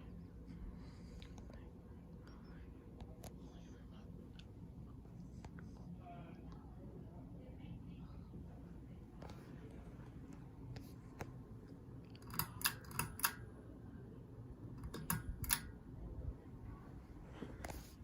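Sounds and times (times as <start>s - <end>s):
ceiling fan humming: 0.0s - 18.0s
fan pull-chain switch clicks: 12.1s - 13.5s, 14.8s - 15.8s.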